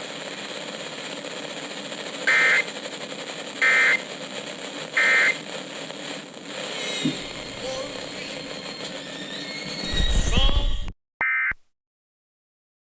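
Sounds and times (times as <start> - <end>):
radio static hiss: 0.0 - 9.0.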